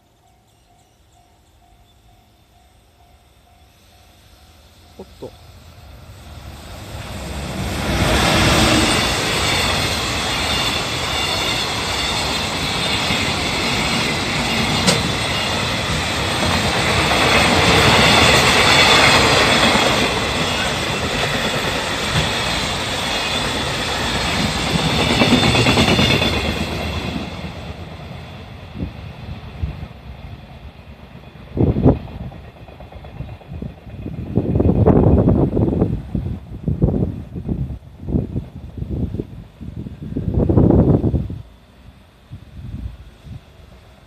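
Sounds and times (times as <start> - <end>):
freight train rumbling past: 0.0 - 44.0
wheels clacking over rail joints: 8.3 - 27.6.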